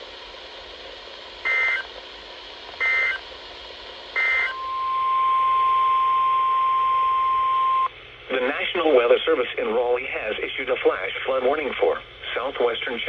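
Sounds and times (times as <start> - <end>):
warbling data bursts: 1.5 - 1.9, 2.8 - 3.2.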